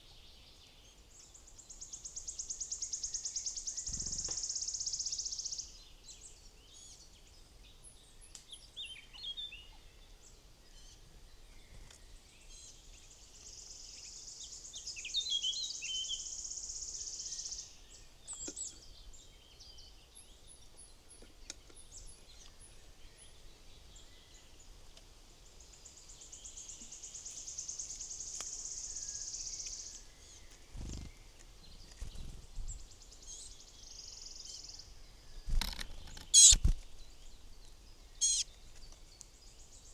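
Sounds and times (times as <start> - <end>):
birds chirping: 25.8 - 39.9.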